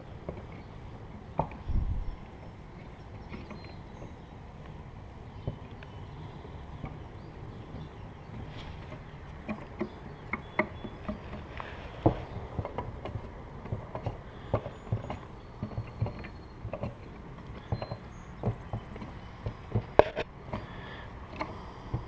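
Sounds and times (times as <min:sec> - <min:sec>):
wooden frame parts clacking: 0:05.4 - 0:22.0.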